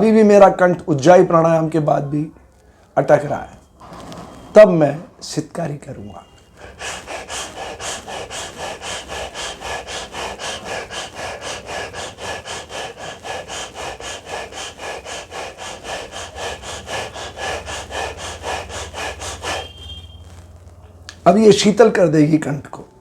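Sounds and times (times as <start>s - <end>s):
hissing breaths through teeth: 6.2s - 21.2s.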